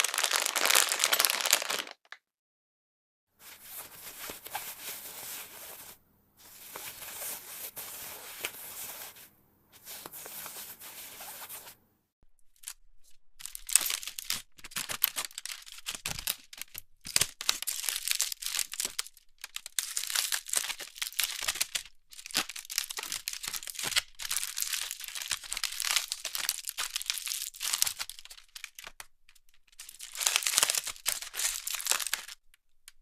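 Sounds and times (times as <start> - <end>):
bag crinkling: 0.0 - 2.2, 29.8 - 32.4.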